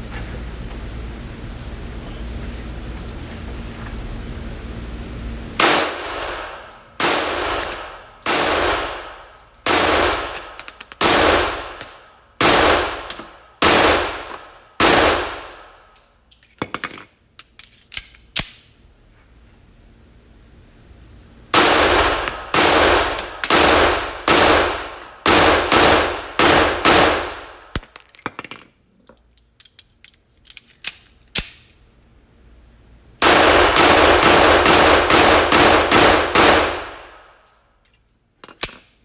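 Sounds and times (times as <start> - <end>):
pistol shots echoing: 5.6 - 11.8, 12.4 - 15.6, 21.6 - 27.8, 33.2 - 37.2.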